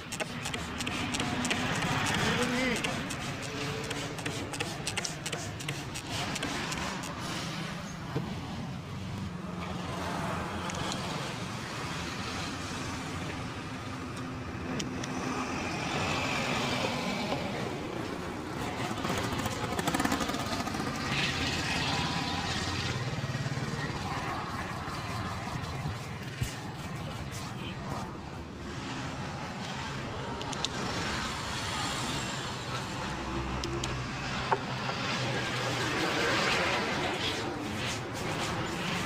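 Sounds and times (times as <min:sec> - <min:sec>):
vehicle engines running: 0:09.0 - 0:39.0.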